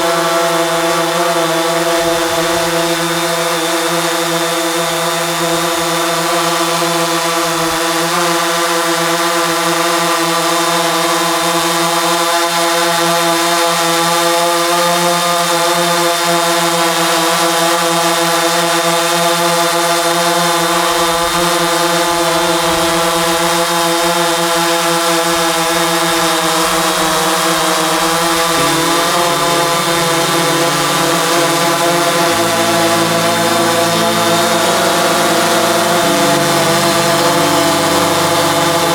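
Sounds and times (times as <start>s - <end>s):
drone buzzing hum: 28.3s - 38.9s.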